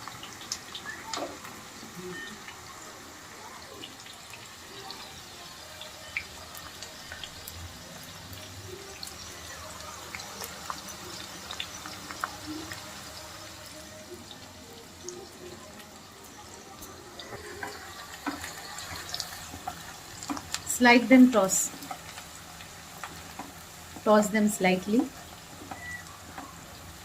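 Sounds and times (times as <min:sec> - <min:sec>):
onions sizzling in oil: 0:00.0 - 0:27.0.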